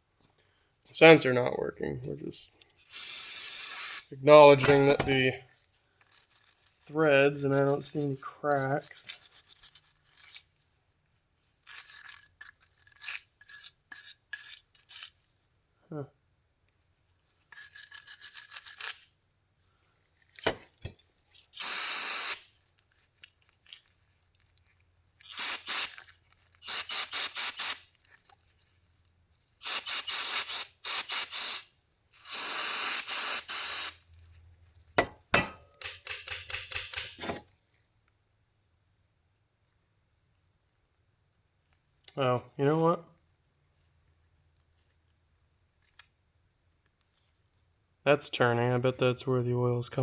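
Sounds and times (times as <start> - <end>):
sharp metal clicks: 35.7 - 37.2.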